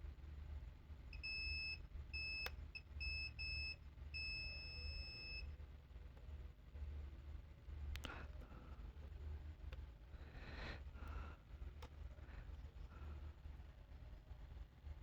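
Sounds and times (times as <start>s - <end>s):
multimeter beeping: 1.2s - 5.5s.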